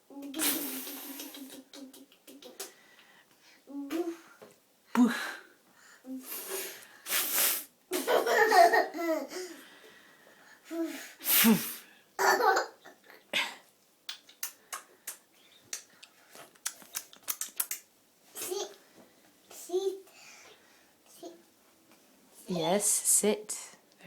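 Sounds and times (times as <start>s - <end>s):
toddler laughing and giggling: 7.9s - 9.6s, 12.2s - 13.2s.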